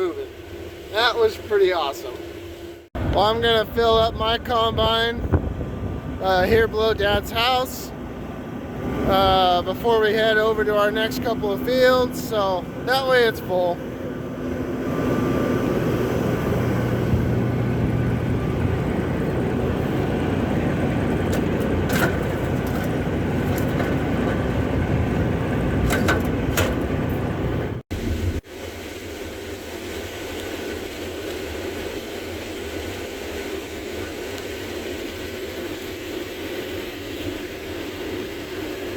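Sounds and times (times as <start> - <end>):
combine harvester running: 0.0 - 28.4.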